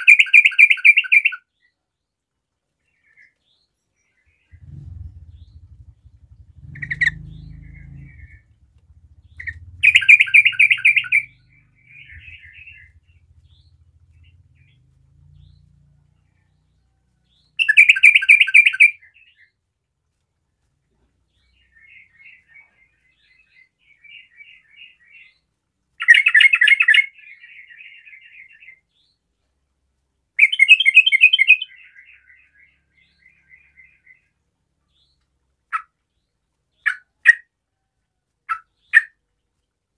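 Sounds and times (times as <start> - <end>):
bird bubbling song: 4.2 - 14.8
bird chattering notes: 4.6 - 14.4.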